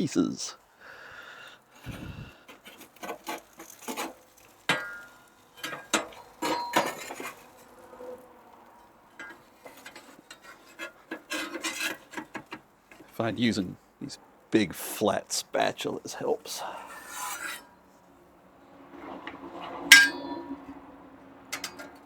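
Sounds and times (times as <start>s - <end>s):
metal spatulas scraping grill grate: 1.8s - 13.2s, 16.5s - 17.8s, 19.0s - 20.8s.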